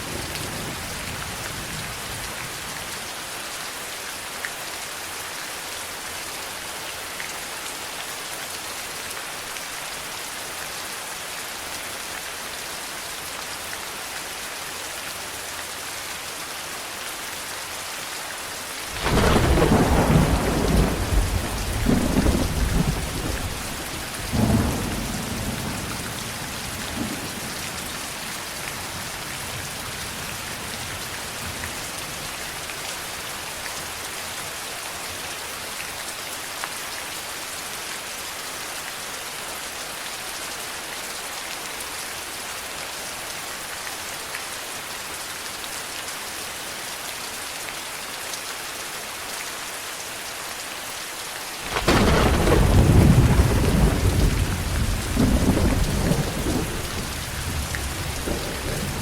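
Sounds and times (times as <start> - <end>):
steady rain: 0.0 - 59.0
thunder crack and rumble: 18.9 - 26.0, 51.7 - 59.0.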